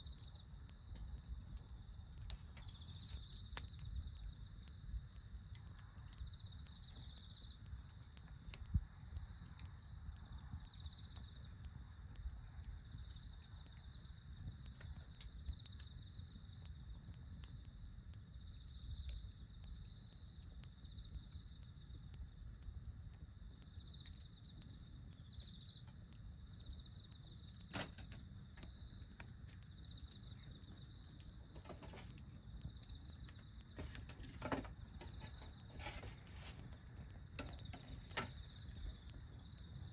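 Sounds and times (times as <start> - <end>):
campfire crackling and popping: 0.0 - 39.9
insects trilling: 0.0 - 39.9
sharp wood crack: 27.7 - 28.4.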